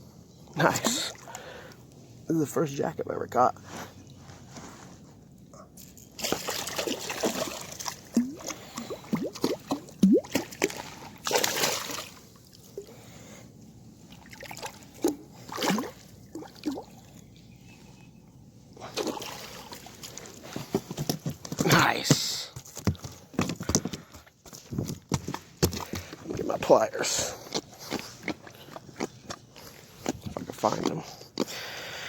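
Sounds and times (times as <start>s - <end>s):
water sloshing and splashing: 0.5s - 2.2s, 5.9s - 18.0s, 18.6s - 22.0s, 22.8s - 31.5s
water gurgles: 6.2s - 13.0s, 14.1s - 17.1s.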